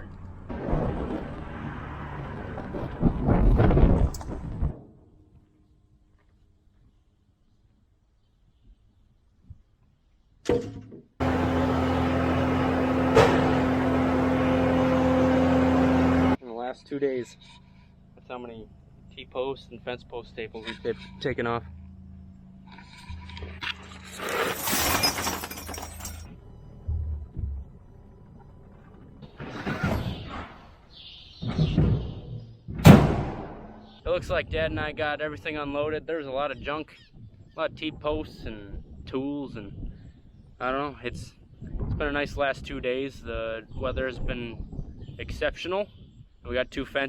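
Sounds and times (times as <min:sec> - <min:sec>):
sharp metal crash: 0:11.2 - 0:15.2, 0:32.8 - 0:33.9
vehicle engine running: 0:11.2 - 0:16.4, 0:17.4 - 0:24.1, 0:25.9 - 0:29.4
metal posts and tools clattering: 0:23.0 - 0:26.3.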